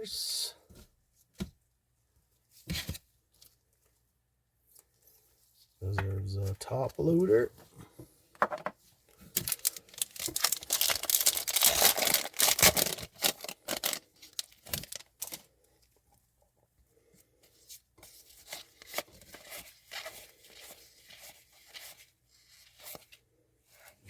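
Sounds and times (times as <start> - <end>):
plastic and paper crinkling: 9.1 - 15.7, 18.0 - 24.0.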